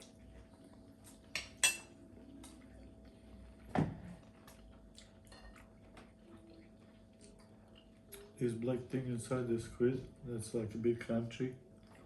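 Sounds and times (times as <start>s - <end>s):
cutlery clinking against plates: 1.4s - 1.9s.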